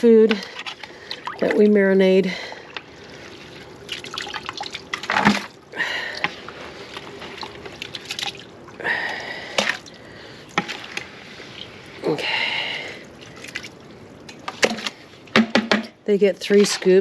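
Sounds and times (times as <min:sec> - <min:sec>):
scooping scrapes: 0:16.4 - 0:17.0.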